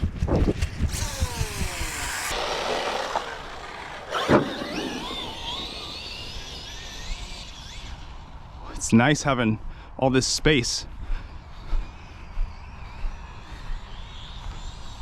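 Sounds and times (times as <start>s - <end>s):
electric motor whining: 0.4s - 8.7s.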